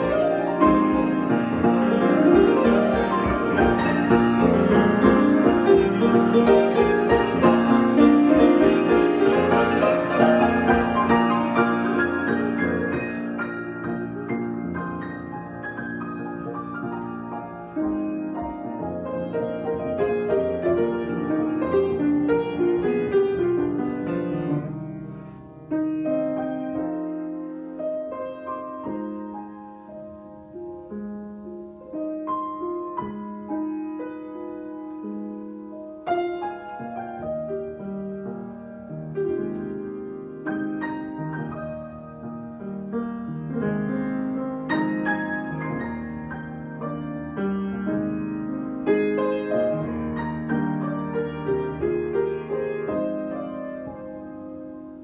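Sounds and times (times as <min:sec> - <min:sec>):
solo piano improvisation: 0:00.0 - 0:55.0.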